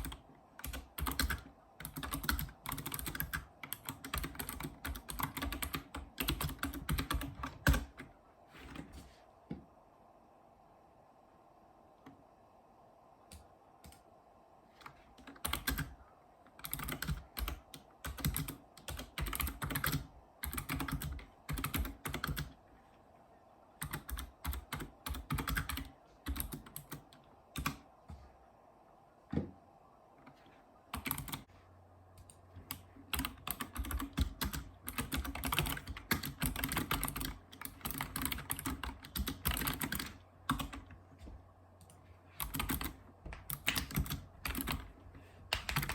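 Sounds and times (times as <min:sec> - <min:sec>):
keyboard typing: 0:00.0 - 0:08.9, 0:14.8 - 0:22.6, 0:23.8 - 0:28.2, 0:30.2 - 0:31.5, 0:32.2 - 0:41.0, 0:41.8 - 0:45.9.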